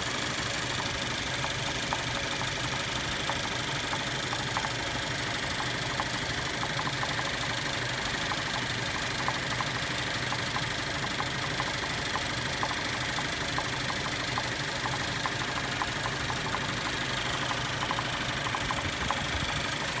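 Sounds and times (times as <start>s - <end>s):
car engine idling: 0.0s - 20.0s
engine knock ticking: 0.0s - 20.0s.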